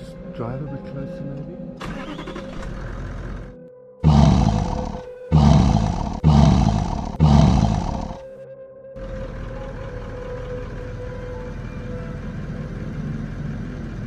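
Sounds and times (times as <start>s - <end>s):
low music drone: 3.2s - 14.0s
lion roaring: 4.0s - 8.2s.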